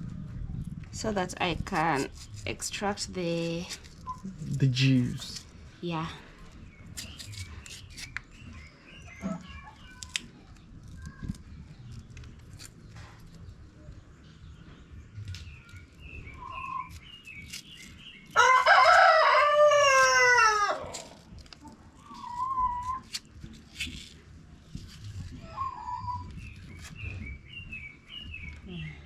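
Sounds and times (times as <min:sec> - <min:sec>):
rooster crowing: 0:18.4 - 0:20.9
faint bird chirps: 0:25.2 - 0:29.0.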